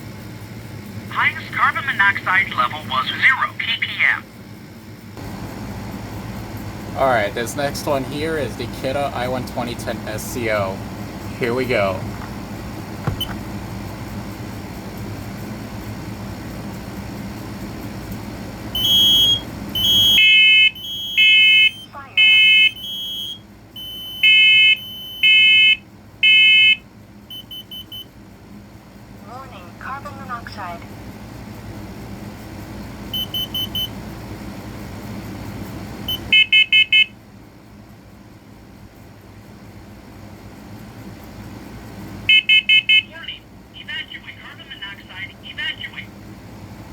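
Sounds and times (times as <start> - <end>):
low background hum: 0.0 - 46.9
high smoke alarm beeping: 13.1 - 13.4, 18.8 - 28.1, 33.1 - 34.0, 36.1 - 37.1, 42.3 - 43.1
lower multi-tone alarm beeps: 18.8 - 28.1, 33.1 - 33.9, 36.1 - 37.1.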